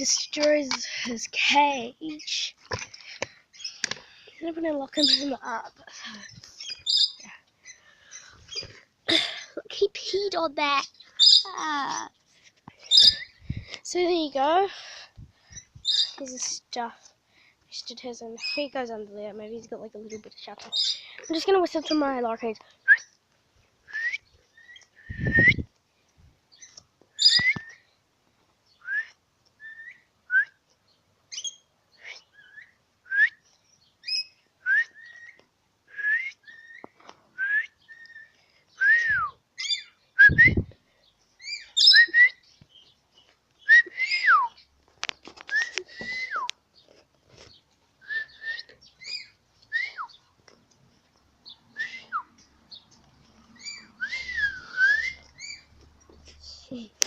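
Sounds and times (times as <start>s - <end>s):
person whistling chirpy notes: 54.0s - 55.2s.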